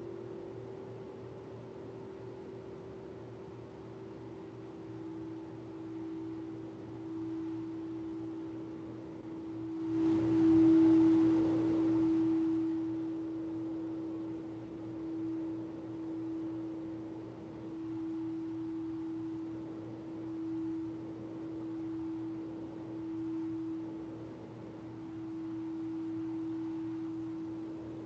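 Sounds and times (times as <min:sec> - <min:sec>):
singing bowl tone: 0:09.3 - 0:17.0.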